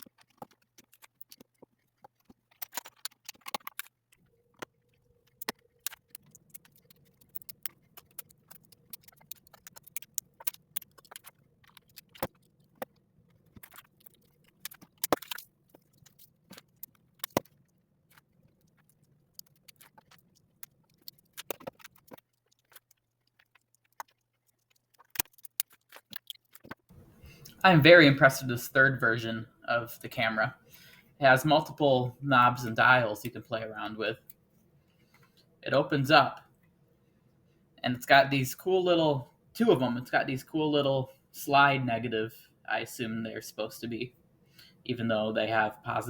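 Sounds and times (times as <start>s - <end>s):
plastic bricks clicking: 0.0s - 26.8s
faint low hum: 26.9s - 46.0s.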